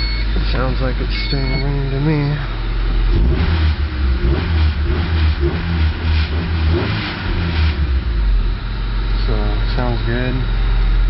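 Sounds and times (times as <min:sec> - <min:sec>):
car engine running: 0:00.0 - 0:11.0.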